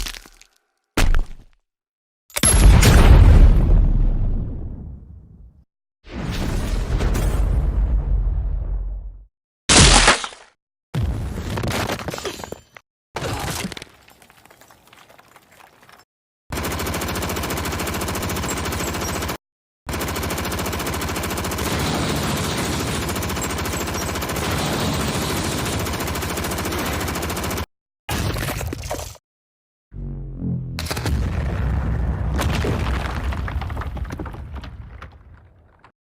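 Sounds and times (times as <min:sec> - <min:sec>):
rapid machine gun-like rattling: 0:16.5 - 0:27.7.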